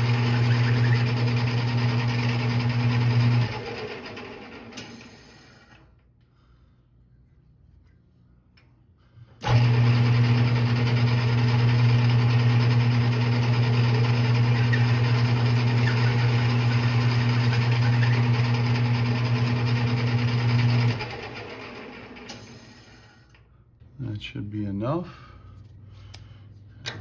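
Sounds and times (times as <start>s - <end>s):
metal lathe running: 0.0s - 5.2s, 9.5s - 22.8s.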